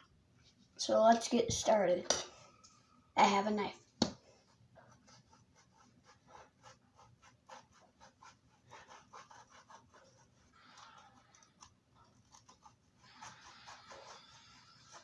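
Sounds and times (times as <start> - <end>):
knife scraping rubber ball: 5.2 - 15.0.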